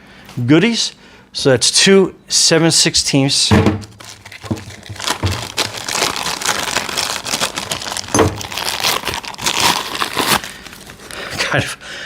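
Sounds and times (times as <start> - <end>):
plastic packaging crinkling: 3.8 - 11.7.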